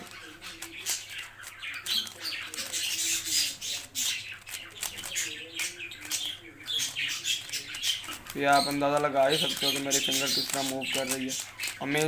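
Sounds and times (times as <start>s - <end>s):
plastic puzzle cube clicking: 4.4s - 5.3s.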